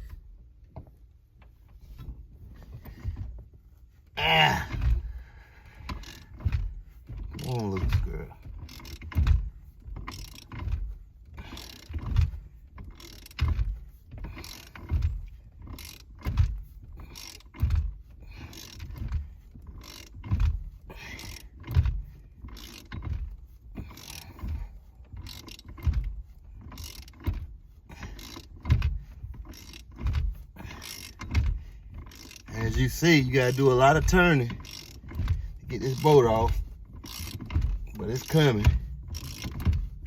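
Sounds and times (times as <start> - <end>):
socket ratchet wrench clicking: 10.0 - 10.7, 17.1 - 17.8, 19.7 - 21.8, 22.4 - 23.3, 26.6 - 27.4, 28.0 - 28.8, 29.4 - 32.5, 34.6 - 36.1, 37.0 - 39.9.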